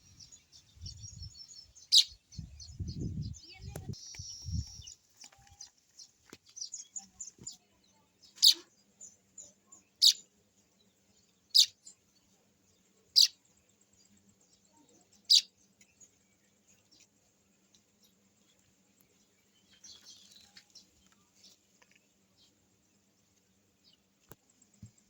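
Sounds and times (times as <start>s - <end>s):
small bird chirping: 0.0s - 25.0s.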